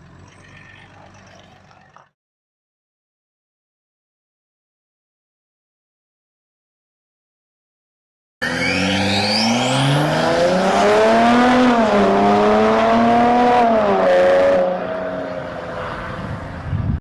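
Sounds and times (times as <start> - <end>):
diesel car accelerating hard: 8.4 - 17.0.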